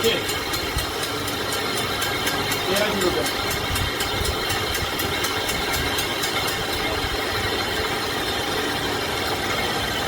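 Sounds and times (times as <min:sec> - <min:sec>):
lathe running: 0:00.0 - 0:10.0.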